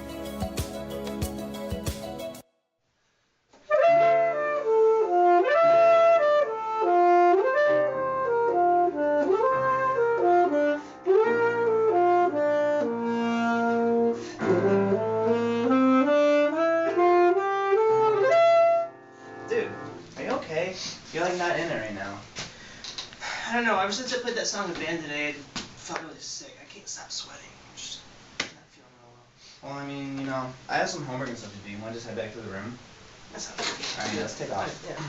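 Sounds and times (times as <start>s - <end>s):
held bass notes: 0.0s - 2.4s
saxophone-like melody: 3.7s - 20.0s.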